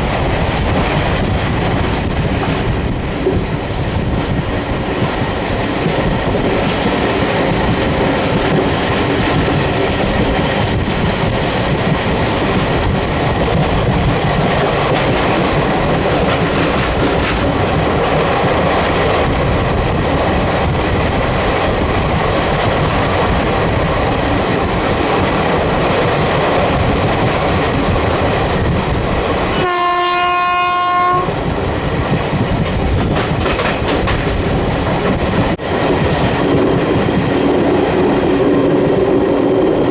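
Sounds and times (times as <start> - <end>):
train rumbling at speed: 0.0 - 39.9
wheels clicking over rail joints: 4.1 - 29.0, 31.3 - 38.5
train horn blast: 29.6 - 31.4.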